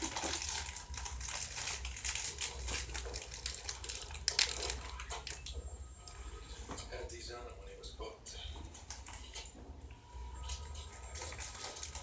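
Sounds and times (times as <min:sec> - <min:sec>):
wrapper tearing and crinkling: 0:00.0 - 0:05.4.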